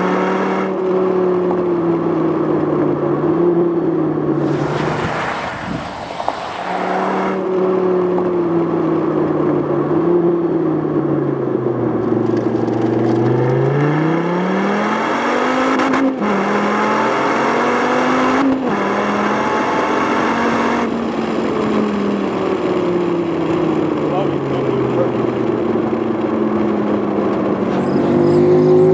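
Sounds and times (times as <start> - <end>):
car engine accelerating: 0.0 - 28.9
gear upshifts: 4.3 - 8.4.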